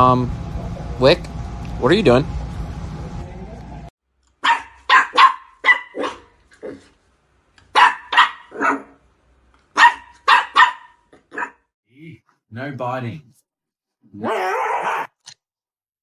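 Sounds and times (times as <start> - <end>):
dog barking: 4.4 - 6.8, 7.7 - 9.0, 9.7 - 11.6, 14.2 - 15.1.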